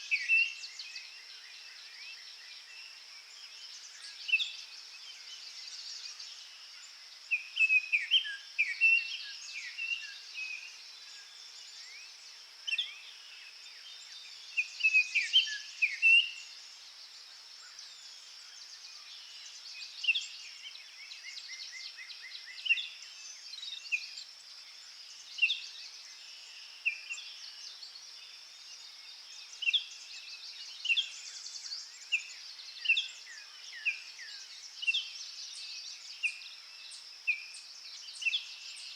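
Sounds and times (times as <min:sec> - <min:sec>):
songbirds chirping: 0:00.0 - 0:38.9.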